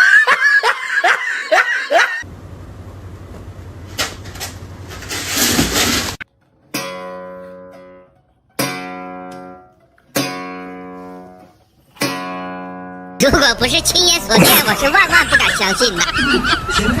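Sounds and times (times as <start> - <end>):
low hum: 2.3 - 5.1.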